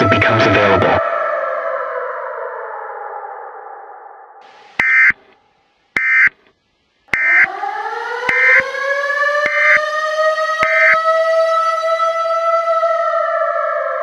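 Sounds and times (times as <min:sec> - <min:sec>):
warning siren wailing: 0:00.0 - 0:05.3, 0:06.0 - 0:06.3, 0:07.1 - 0:14.0
buzzy alert data bursts: 0:04.8 - 0:05.1, 0:07.1 - 0:07.5.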